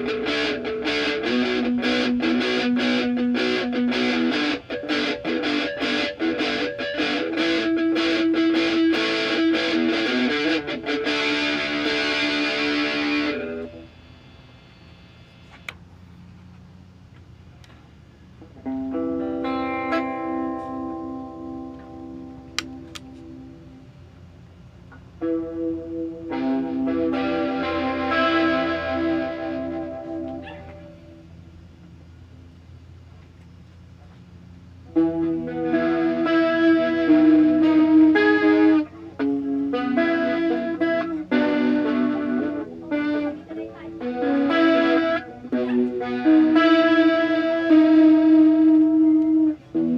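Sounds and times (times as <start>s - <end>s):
distorted electric guitar chord: 0.0s - 15.5s, 18.4s - 24.1s, 25.0s - 31.6s, 34.8s - 49.9s
amp hum: 0.0s - 49.9s
sharp click: 22.5s - 23.3s.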